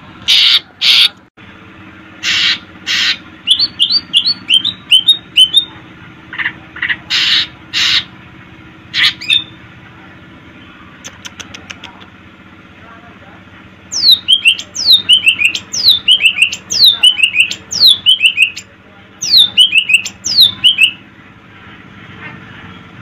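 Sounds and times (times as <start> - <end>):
bird singing rasping notes: 2.2 - 8.1, 8.9 - 9.7, 13.9 - 21.1
sharp bird chirps: 13.9 - 21.0.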